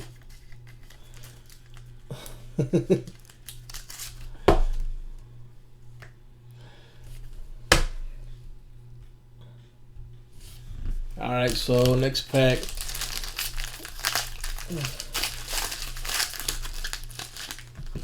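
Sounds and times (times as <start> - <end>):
card packaging rustling and crinkling: 0.0 - 4.9, 10.4 - 18.0.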